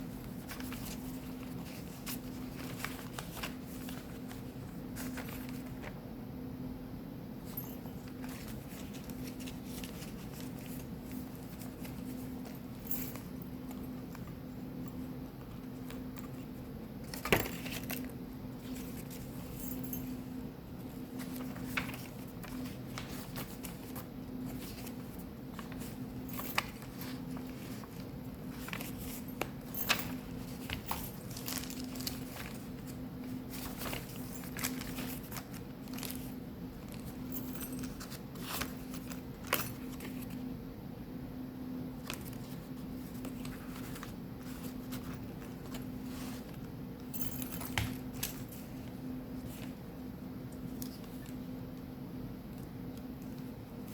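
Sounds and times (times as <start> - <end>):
paper rustling: 0.0 - 6.0, 7.5 - 14.4, 20.8 - 40.4, 42.0 - 46.7, 47.4 - 49.9
steady low hum: 0.0 - 53.9.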